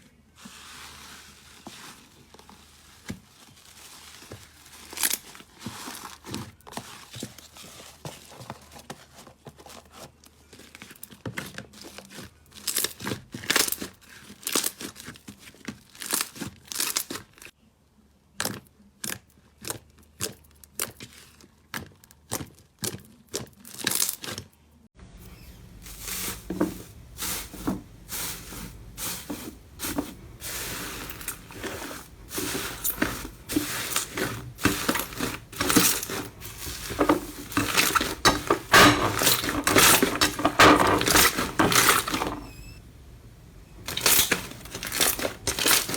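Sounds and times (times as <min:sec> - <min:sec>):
background hiss: 0:25.0 - 0:45.9.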